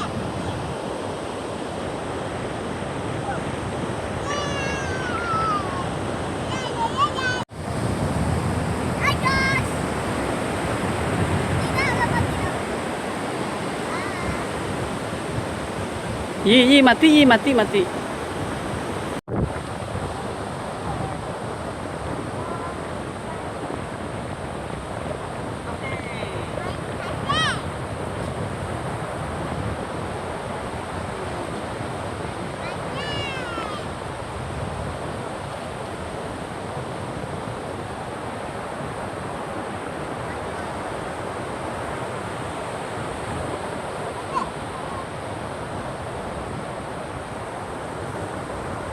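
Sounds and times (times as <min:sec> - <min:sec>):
water rushing: 0:00.0 - 0:48.9
steady rushing noise: 0:07.4 - 0:20.4.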